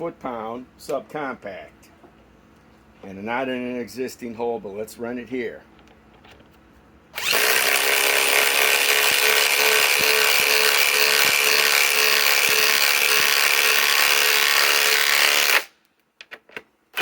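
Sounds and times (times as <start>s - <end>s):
impact wrench hammering screw into wood: 7.2s - 15.8s.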